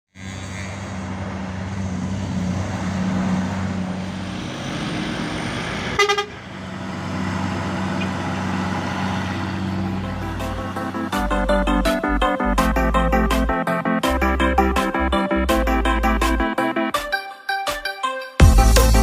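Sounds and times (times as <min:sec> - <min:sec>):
truck horn blast: 0:00.1 - 0:01.5, 0:05.9 - 0:06.5
truck engine droning: 0:00.1 - 0:16.9.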